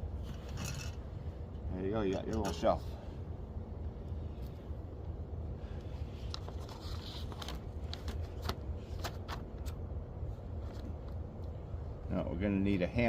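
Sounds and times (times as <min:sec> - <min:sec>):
grill parts clicking and scraping: 0:02.0 - 0:02.8.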